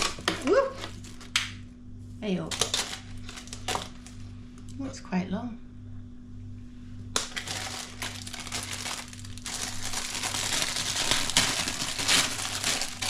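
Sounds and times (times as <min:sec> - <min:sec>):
packet rustling and crackling: 0:02.5 - 0:04.2, 0:07.2 - 0:13.0.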